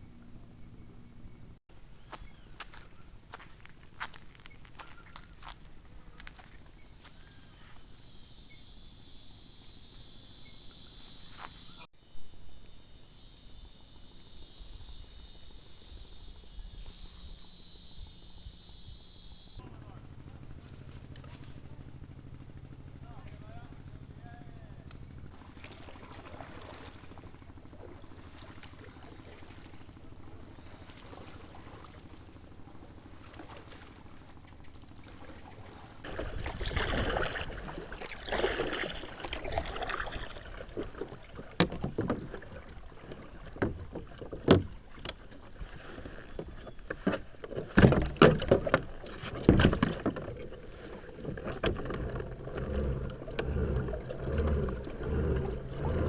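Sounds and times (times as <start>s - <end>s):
water splashing: 25.4s - 32.2s, 32.8s - 56.0s
paddle knocking on hull: 35.4s - 56.0s.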